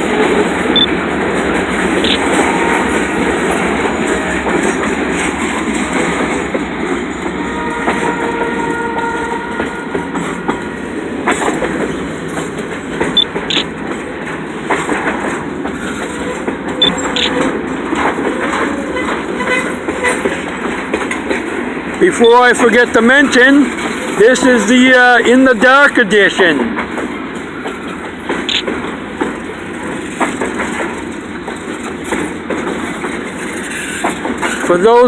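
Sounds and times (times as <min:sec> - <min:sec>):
freight train wheels rumbling: 0:00.0 - 0:35.0
clicks over rail joints: 0:26.6 - 0:35.0.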